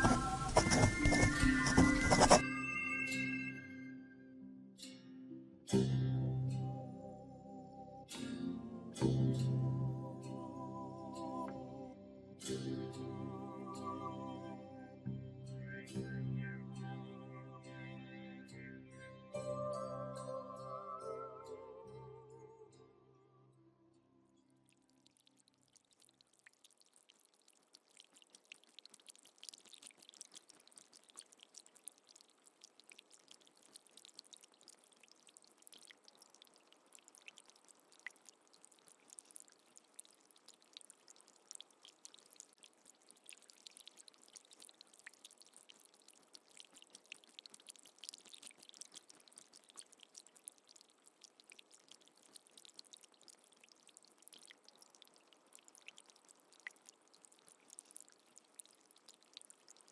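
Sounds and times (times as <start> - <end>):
water trickling and dripping: 24.3 - 59.9.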